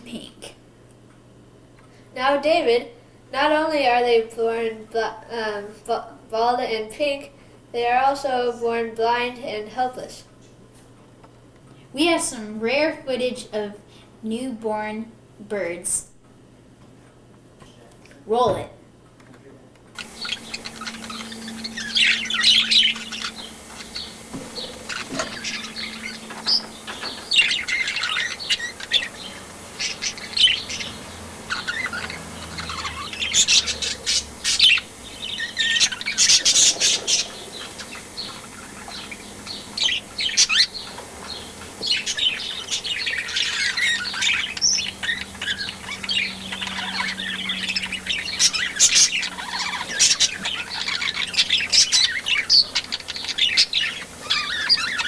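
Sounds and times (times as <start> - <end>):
nestling birds chirping: 20.0 - 55.0.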